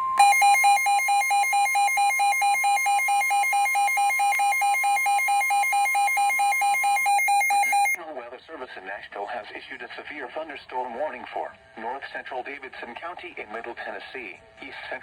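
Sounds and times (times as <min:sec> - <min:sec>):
steady alarm tone: 0:00.0 - 0:08.0
rapid pulsing beeps: 0:00.2 - 0:08.0.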